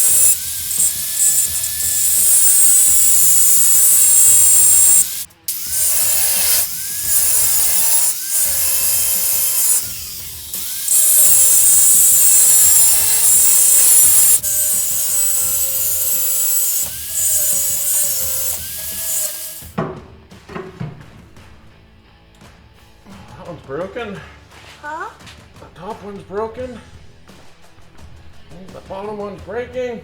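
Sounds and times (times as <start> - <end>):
power grinder cutting metal: 0.0 - 19.8.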